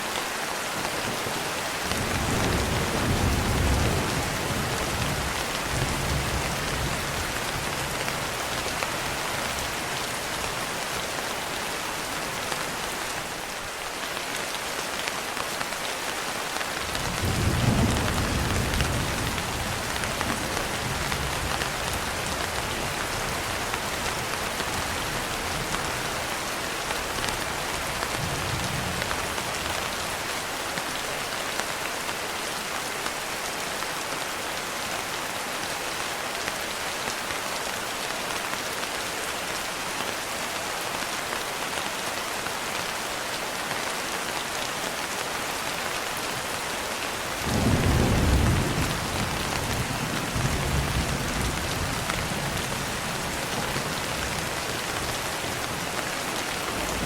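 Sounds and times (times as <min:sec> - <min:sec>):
steady rain: 0:00.0 - 0:57.0
thunder rumbling: 0:47.5 - 0:53.0.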